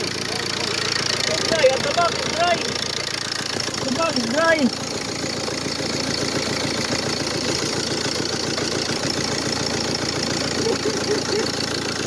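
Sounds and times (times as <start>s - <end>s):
diesel engine idling: 0.0s - 12.0s.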